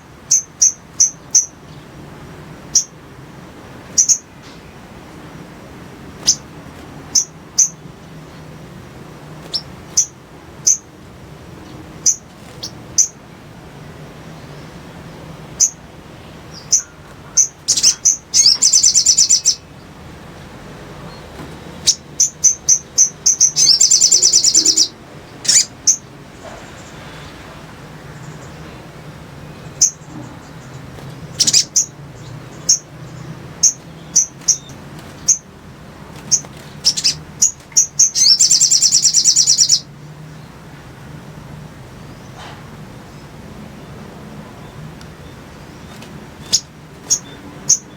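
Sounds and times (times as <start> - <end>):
bird high chips: 16.6 - 19.6, 21.8 - 26.0, 31.3 - 32.0, 36.2 - 39.8
bird rapid loud trill: 16.6 - 19.6, 21.8 - 26.0, 31.3 - 32.0, 36.3 - 39.9.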